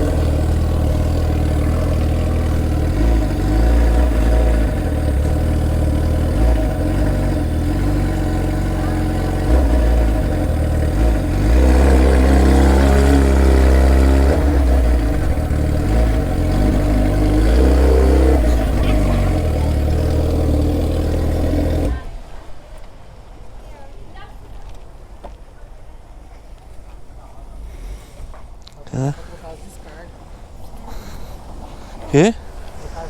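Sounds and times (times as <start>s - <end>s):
motorcycle engine running: 0.0s - 22.2s.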